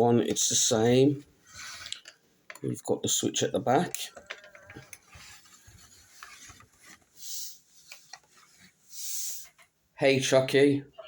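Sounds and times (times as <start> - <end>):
hands rubbing plastic: 1.4 - 2.6, 4.2 - 9.8.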